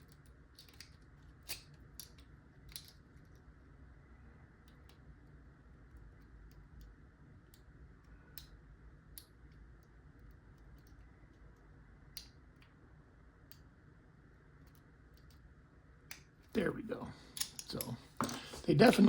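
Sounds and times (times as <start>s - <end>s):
low room hum: 0.0s - 19.0s
lock pick metallic clicks: 17.4s - 17.9s.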